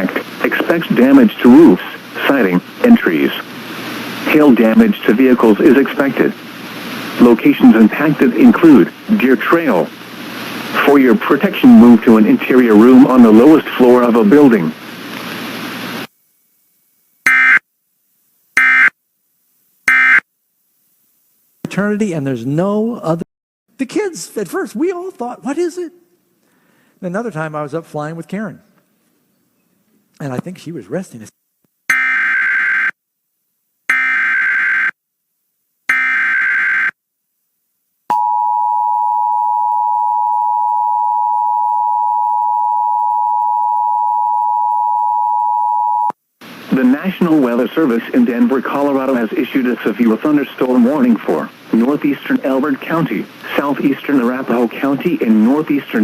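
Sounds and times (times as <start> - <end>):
digital data tone bursts: 17.3 - 17.6, 19.9 - 20.2.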